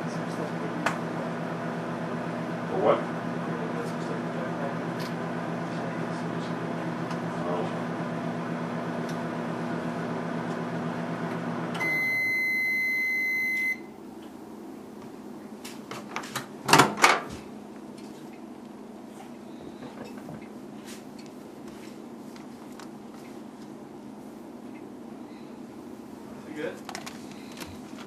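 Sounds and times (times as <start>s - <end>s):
steady electrical hum: 11.7s - 28.0s
long electronic beep: 11.8s - 13.9s.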